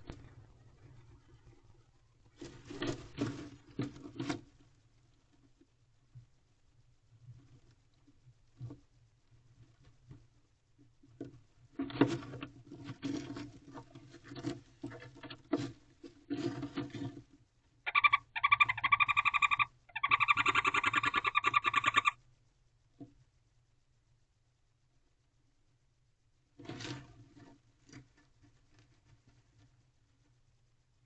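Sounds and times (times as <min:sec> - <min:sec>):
owl scratching on wooden floor: 0:17.9 - 0:22.2
owl trilling calls: 0:17.9 - 0:22.2.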